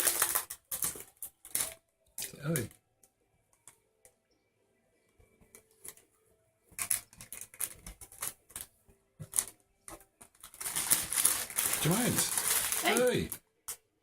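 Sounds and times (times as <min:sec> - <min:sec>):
flower stems rustling: 0:10.5 - 0:13.4.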